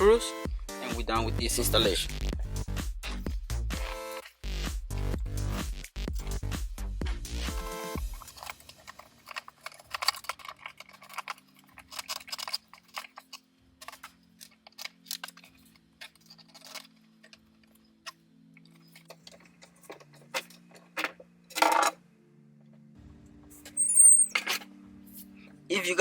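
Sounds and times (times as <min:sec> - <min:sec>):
electronic music: 0:00.0 - 0:08.4.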